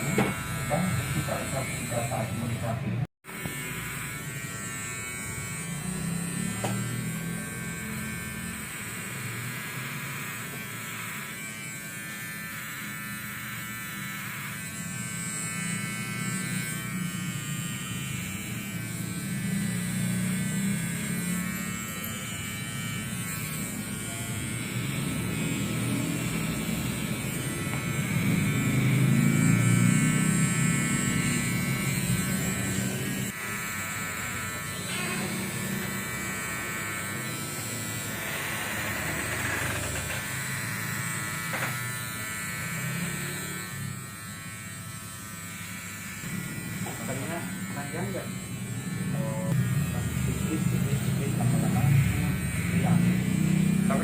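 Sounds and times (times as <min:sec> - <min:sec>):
electric hair clippers buzzing: 0:00.0 - 0:54.0.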